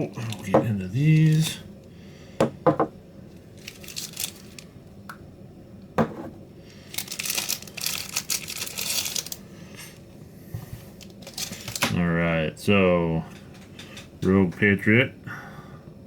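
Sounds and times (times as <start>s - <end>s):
packaging crinkling and rustling: 0.1s - 1.6s, 3.3s - 4.7s, 6.7s - 9.4s, 10.9s - 12.0s.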